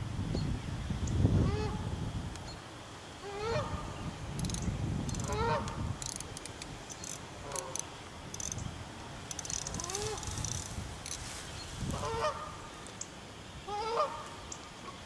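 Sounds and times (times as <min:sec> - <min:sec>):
geese honking: 0:03.2 - 0:03.8, 0:05.2 - 0:05.8, 0:11.9 - 0:12.7, 0:13.7 - 0:15.0.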